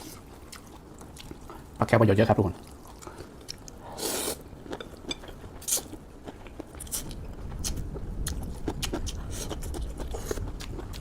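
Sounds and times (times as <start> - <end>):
crunchy chewing: 2.5 - 11.0.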